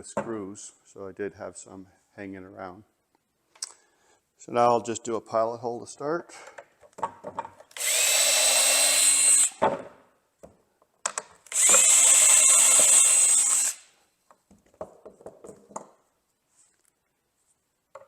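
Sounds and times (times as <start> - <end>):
power drill drilling into wood: 7.8 - 9.6, 11.5 - 13.9.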